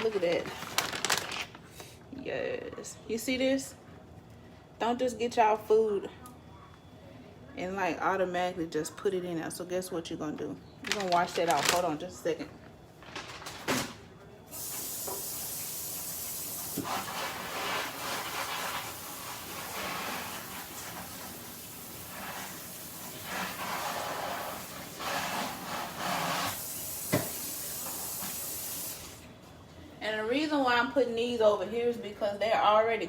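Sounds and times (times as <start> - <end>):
tap water running and splashing: 14.6 - 29.2.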